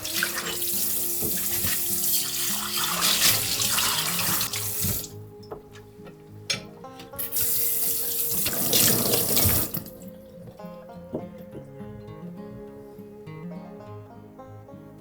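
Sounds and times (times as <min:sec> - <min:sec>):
tap running into sink: 0:00.0 - 0:05.7, 0:06.5 - 0:10.0
soft background music: 0:00.0 - 0:15.0.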